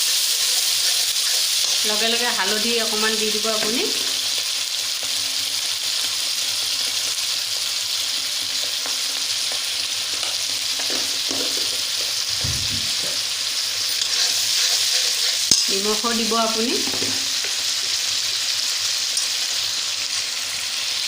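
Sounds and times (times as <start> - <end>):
paste sizzling in hot oil: 0.0 - 21.0.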